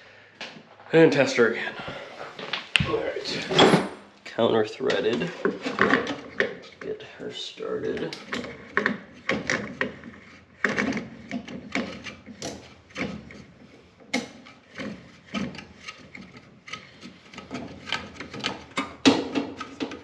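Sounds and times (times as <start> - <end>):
plastic and metal parts handled: 4.8 - 7.0, 7.7 - 20.0.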